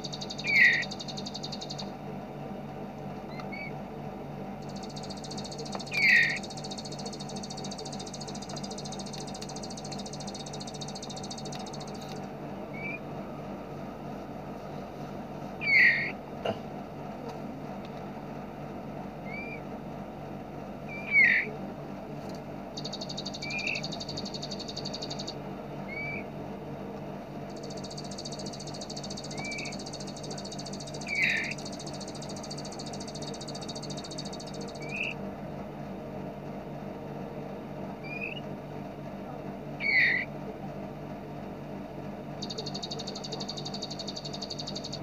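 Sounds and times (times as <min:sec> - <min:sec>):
fast buzzing bird trills: 0:00.0 - 0:01.9, 0:04.6 - 0:12.0, 0:15.6 - 0:16.2, 0:22.8 - 0:26.2, 0:27.5 - 0:35.2, 0:39.8 - 0:40.3, 0:42.4 - 0:45.0
songbird chirps: 0:00.0 - 0:02.0, 0:04.6 - 0:13.1, 0:22.7 - 0:26.3, 0:27.5 - 0:35.2, 0:42.4 - 0:45.0
steady low hum: 0:00.0 - 0:45.0.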